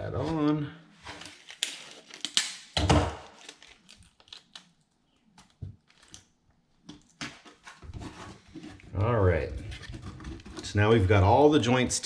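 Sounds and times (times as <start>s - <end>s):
packaging tape rustling: 1.1s - 6.3s
tape crinkles and clicks: 1.1s - 7.2s.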